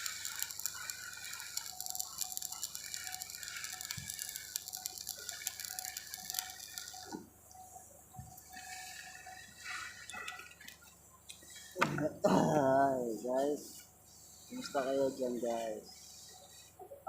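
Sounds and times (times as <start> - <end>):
welding arc crackling: 0.0 - 13.6.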